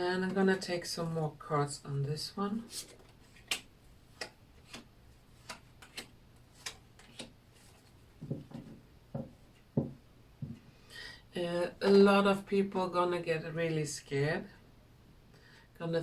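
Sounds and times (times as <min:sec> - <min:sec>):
cards clicking on a table: 0:03.3 - 0:07.4
dull taps: 0:08.2 - 0:10.7.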